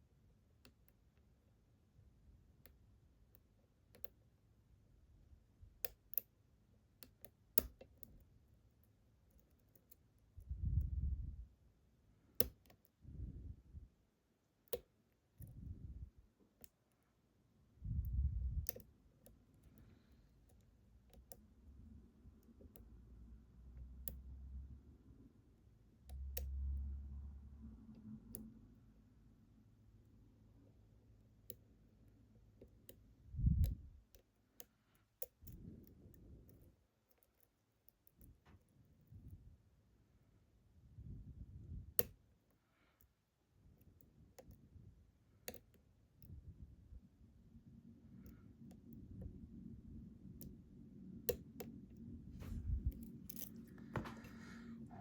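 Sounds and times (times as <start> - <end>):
lock pick clicking: 7.0 - 8.2, 45.5 - 46.4, 52.8 - 54.2.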